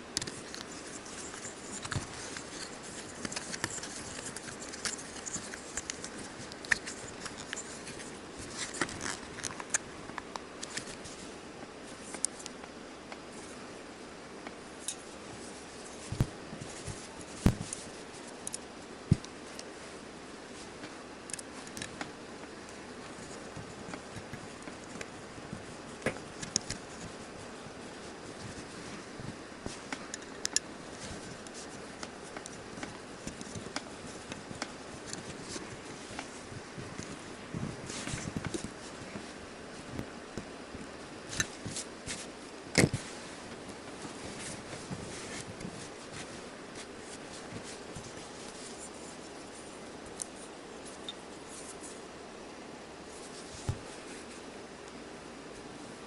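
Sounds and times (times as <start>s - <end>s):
steady background hiss: 0.0s - 56.0s.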